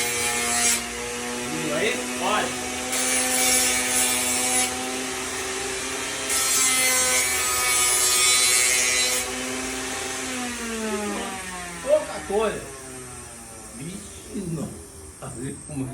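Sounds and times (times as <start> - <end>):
blender motor whine: 0.0 - 2.9, 4.7 - 6.3, 7.2 - 14.1.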